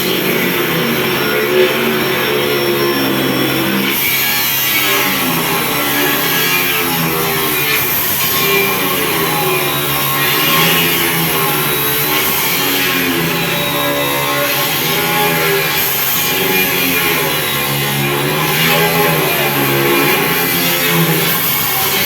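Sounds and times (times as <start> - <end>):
angle grinder cutting metal: 0.0 - 22.0
guitar music: 13.1 - 22.0.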